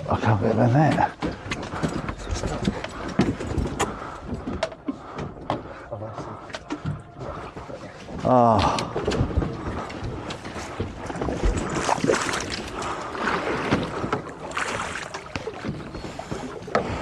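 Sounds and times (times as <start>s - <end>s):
water noise: 0.0s - 17.0s
wind: 0.0s - 17.0s
gear knocking against boat: 0.1s - 17.0s.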